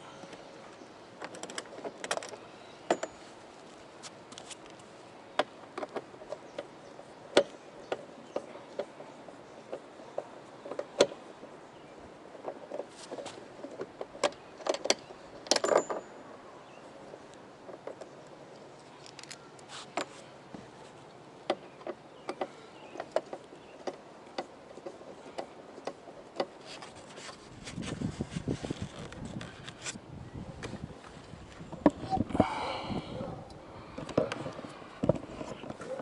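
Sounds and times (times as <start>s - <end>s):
tools and small parts clicking: 13.6s - 16.1s, 17.7s - 19.4s.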